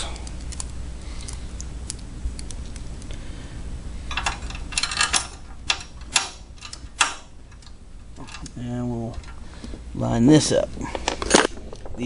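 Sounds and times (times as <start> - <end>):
bolts and washers clinking: 4.1 - 9.4.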